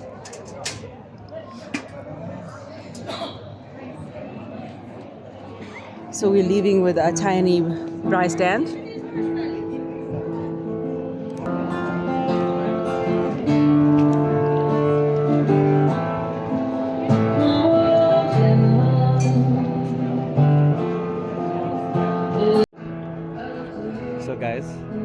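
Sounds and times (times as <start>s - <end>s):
acoustic guitar music: 6.1s - 25.0s.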